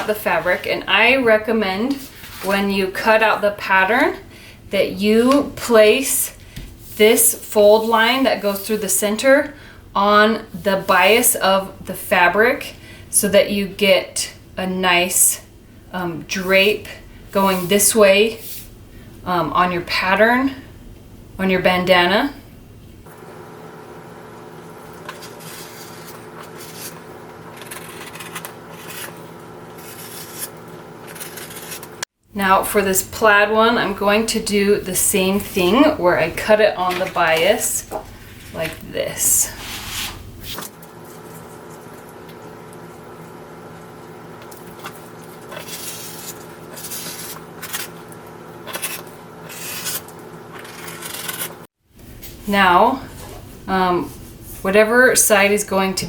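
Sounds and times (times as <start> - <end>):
faint steady hum: 0.0 - 51.4
scissors shearing fabric: 25.3 - 29.2, 29.8 - 32.1, 48.6 - 51.6
blade rasping through cloth: 29.8 - 32.0, 48.7 - 51.6.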